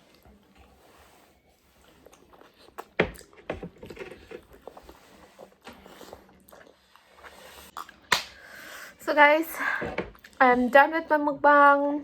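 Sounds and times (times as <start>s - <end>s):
chewing noises: 0.0s - 3.4s, 4.2s - 8.5s
sharp eating sound: 4.6s - 8.5s.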